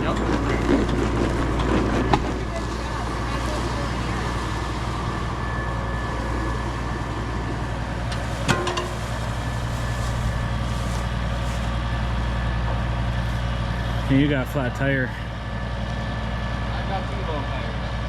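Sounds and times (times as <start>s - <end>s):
engine running steadily: 0.0s - 18.0s
sharp metallic clank: 8.4s - 9.0s.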